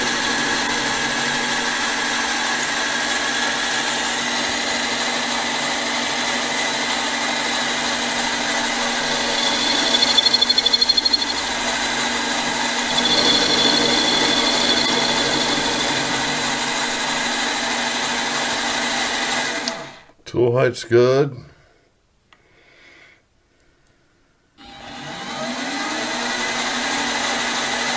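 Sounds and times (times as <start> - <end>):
high cutting whine: 0.0 - 4.0, 7.1 - 18.7
lathe motor humming: 0.0 - 20.0
rapid high pulsing tone: 8.0 - 17.7.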